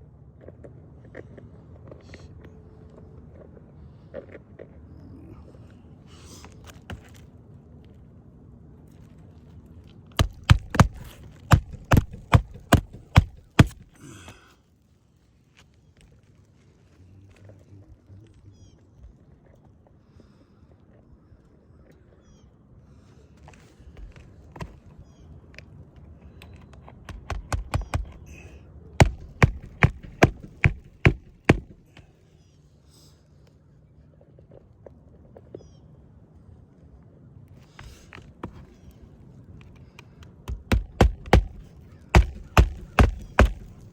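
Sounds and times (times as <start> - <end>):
hammer striking roof shingle: 10.2 - 14.4, 27.0 - 28.4, 29.0 - 32.1, 40.4 - 43.9.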